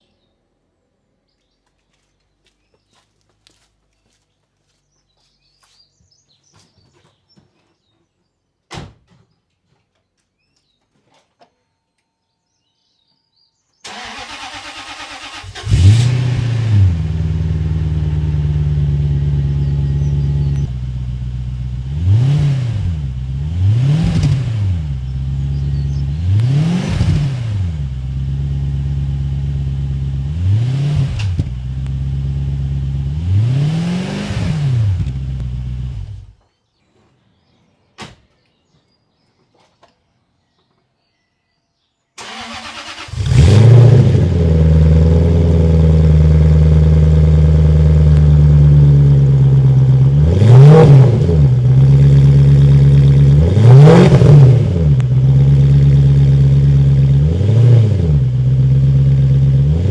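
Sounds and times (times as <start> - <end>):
engine cranking and idling: 13.9 - 21.7, 42.2 - 50.2
car engine revving: 13.9 - 36.3, 42.2 - 59.9.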